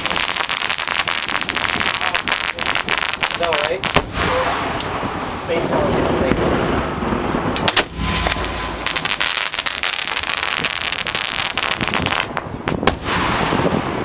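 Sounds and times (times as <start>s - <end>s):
fireworks crackling: 0.0s - 4.2s, 4.8s - 12.5s
fireworks bangs: 5.8s - 13.8s.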